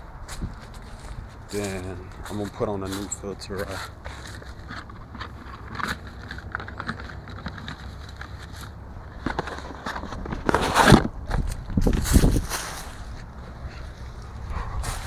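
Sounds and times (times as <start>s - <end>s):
handling clicks and rustles: 0.1s - 15.0s
rustling scrape: 0.3s - 15.0s.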